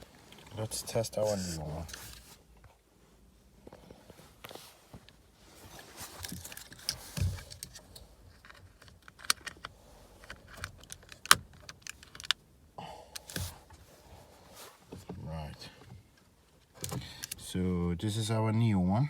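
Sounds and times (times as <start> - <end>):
small hard parts clicking and rattling: 6.0 - 12.4.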